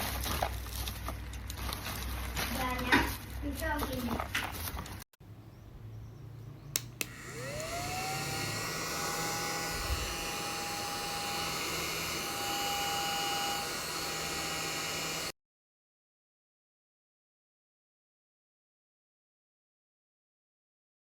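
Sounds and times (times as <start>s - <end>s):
vacuum switch clicks: 6.7s - 7.8s
handheld vacuum motor whine: 7.0s - 15.4s.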